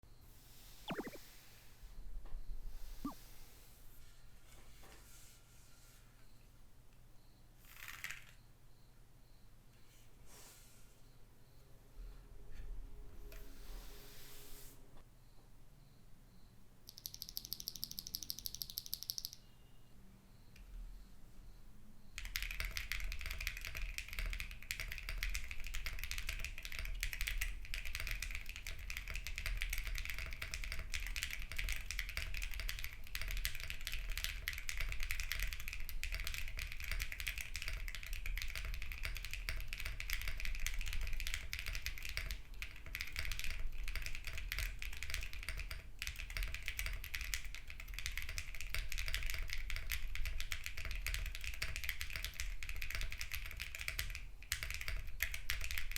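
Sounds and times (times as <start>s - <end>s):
mechanical keyboard typing: 16.9s - 19.4s, 22.2s - 55.9s.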